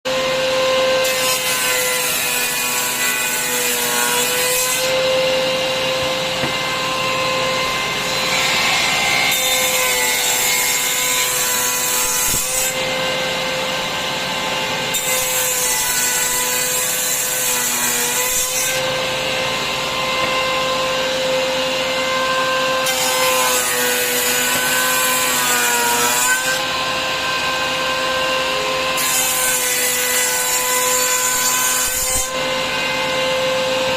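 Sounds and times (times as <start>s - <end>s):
router cutting wood: 0.1s - 33.9s
router motor whining: 2.2s - 33.9s.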